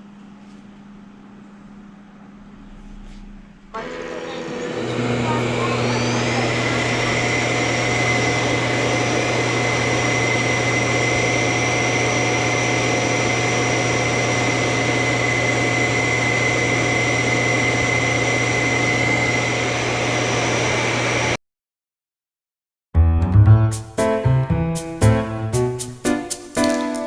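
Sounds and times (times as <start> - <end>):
vacuum suction motor running: 2.8 - 21.4.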